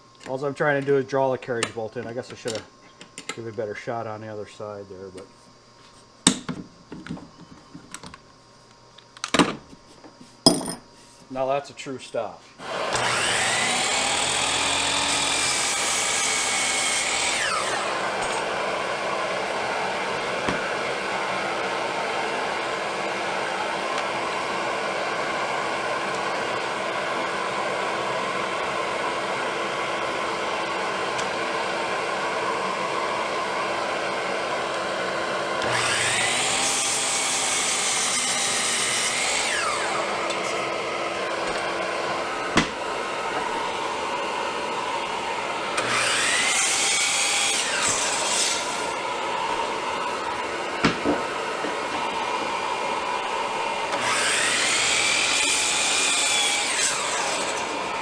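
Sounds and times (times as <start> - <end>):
power tool motor revving: 12.6 - 58.0.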